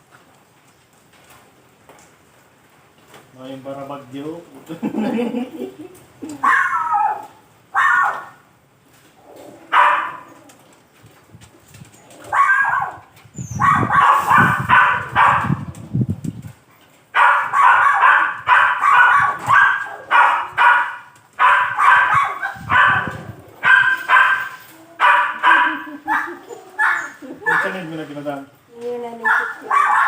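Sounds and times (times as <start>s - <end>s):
dog yelping and barking: 6.4s - 8.4s, 9.6s - 10.5s, 12.2s - 15.6s, 17.2s - 27.8s, 29.2s - 30.0s.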